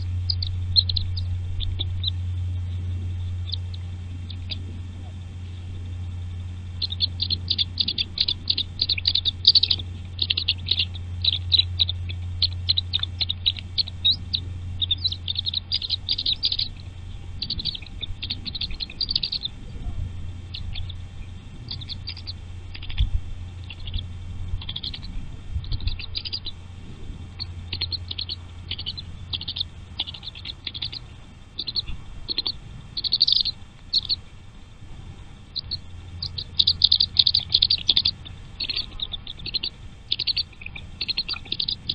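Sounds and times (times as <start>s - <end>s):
nestling birds cheeping: 0.0s - 41.9s
steady low hum: 0.0s - 41.9s.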